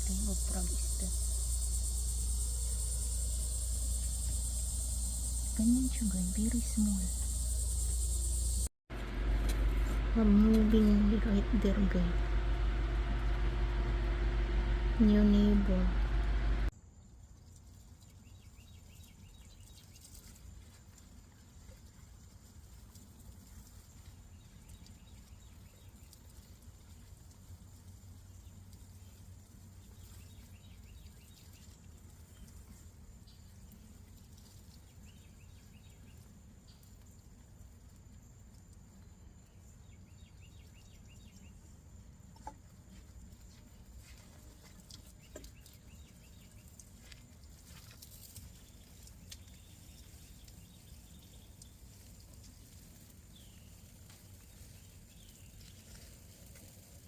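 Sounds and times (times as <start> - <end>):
high chirping trills: 0.0 - 8.7
low rumble: 0.0 - 16.7.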